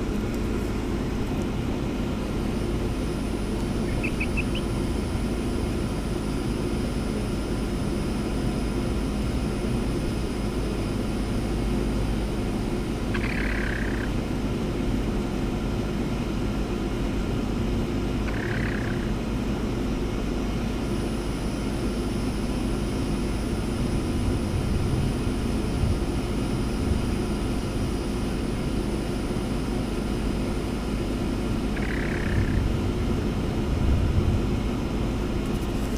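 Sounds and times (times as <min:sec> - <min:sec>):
steady low hum: 0:00.0 - 0:35.9
hen soft calls: 0:03.4 - 0:04.8, 0:13.1 - 0:14.1, 0:18.2 - 0:19.1, 0:31.7 - 0:32.7.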